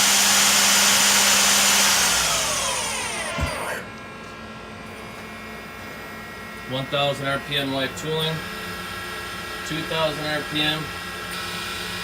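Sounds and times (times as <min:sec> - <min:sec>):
lathe spindle whine spinning down: 0:00.0 - 0:03.9
steady machine hum: 0:00.0 - 0:12.0.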